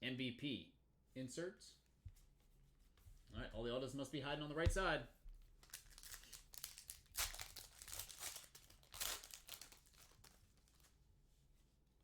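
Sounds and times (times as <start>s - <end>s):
plastic wrapper crinkling: 5.6s - 11.0s.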